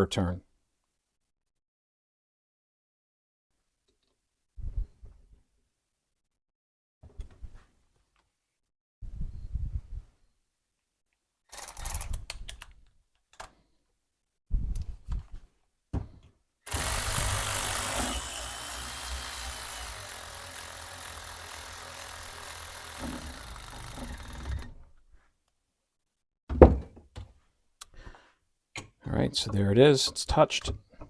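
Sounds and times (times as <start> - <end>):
power driver running: 16.7 - 24.7.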